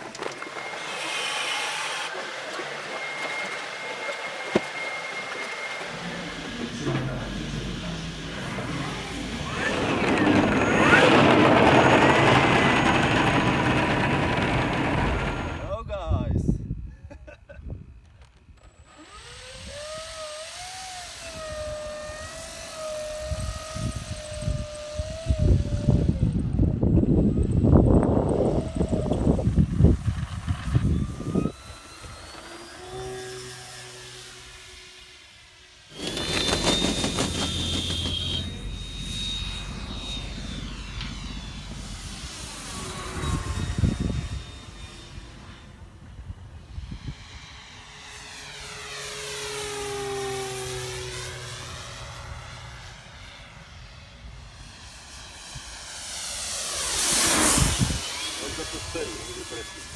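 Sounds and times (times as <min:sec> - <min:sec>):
aircraft engine passing over: 0:00.0 - 0:15.8, 0:18.8 - 0:59.9
machine whine: 0:00.0 - 0:15.8, 0:18.6 - 0:54.2, 0:56.2 - 0:59.9
high whine: 0:02.8 - 0:15.9, 0:35.9 - 0:47.3
low rumbling: 0:05.9 - 0:15.8.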